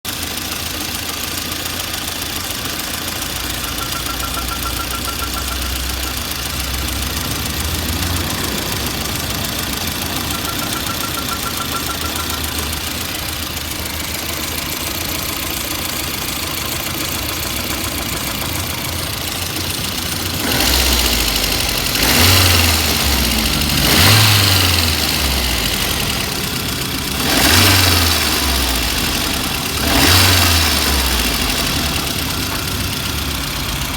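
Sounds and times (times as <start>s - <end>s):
car engine idling: 0.0s - 33.9s
car engine revving: 0.1s - 33.9s
faint rapid high chirping: 10.1s - 13.0s.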